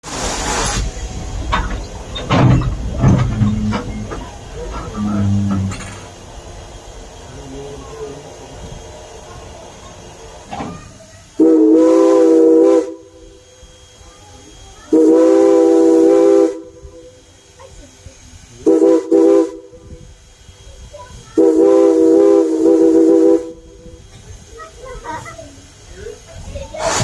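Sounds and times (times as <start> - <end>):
train running noise and hiss: 0.0 - 27.0
steam whistle blasts: 11.4 - 13.3, 14.9 - 17.2, 18.6 - 19.8, 21.4 - 23.8.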